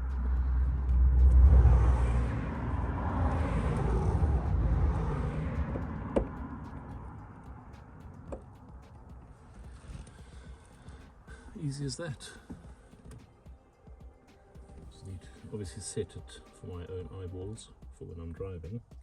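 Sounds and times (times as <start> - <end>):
vehicle passing: 0.0 - 13.4.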